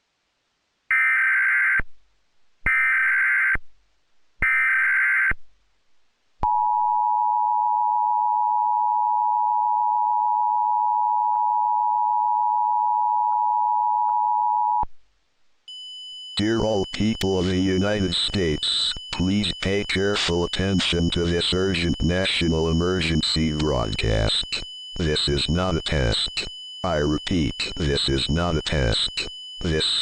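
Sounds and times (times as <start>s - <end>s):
digital data bursts: 16.4s - 30.0s
two-tone attention signal: 16.4s - 30.0s.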